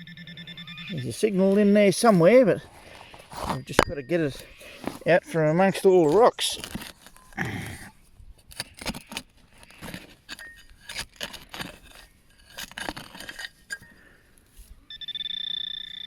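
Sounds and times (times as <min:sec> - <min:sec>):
metal detector beep: 0:00.0 - 0:06.4, 0:14.8 - 0:16.0
digging tool scraping rocks: 0:00.9 - 0:14.8.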